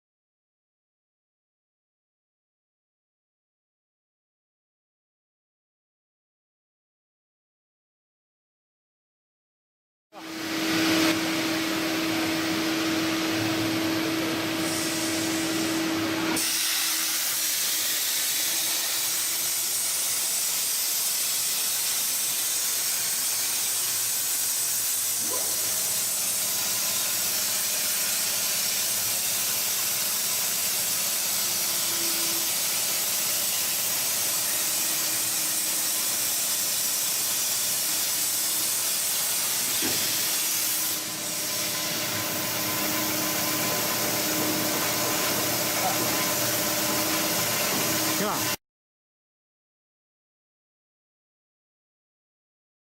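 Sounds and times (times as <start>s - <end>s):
plasma torch hissing: 14.5s - 48.5s.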